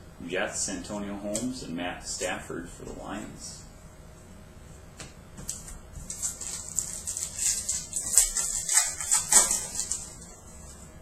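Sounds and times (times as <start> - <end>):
wrapper crinkling and tearing: 6.1 - 10.3.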